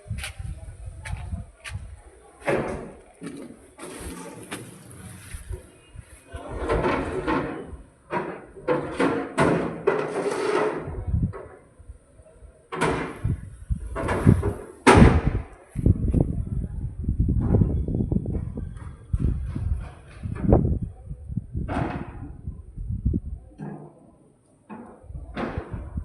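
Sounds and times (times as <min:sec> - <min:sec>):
knocks and scraping: 0:00.0 - 0:11.7, 0:12.7 - 0:16.4, 0:17.3 - 0:20.9, 0:21.6 - 0:22.5, 0:23.6 - 0:26.0
sharp bangs: 0:12.7 - 0:15.6.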